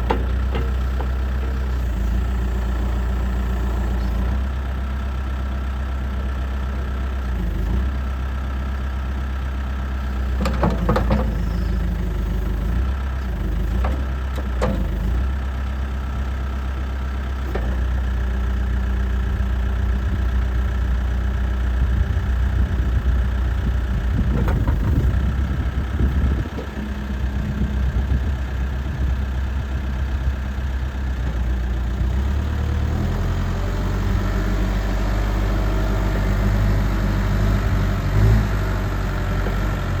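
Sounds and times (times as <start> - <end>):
diesel engine running: 0.0 - 40.0
engine knocking: 6.0 - 32.5.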